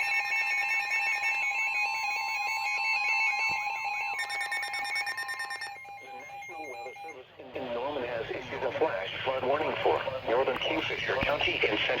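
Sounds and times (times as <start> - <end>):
pulsing electronic alarm beeps: 0.0 - 7.2
steady alarm tone: 0.0 - 7.3.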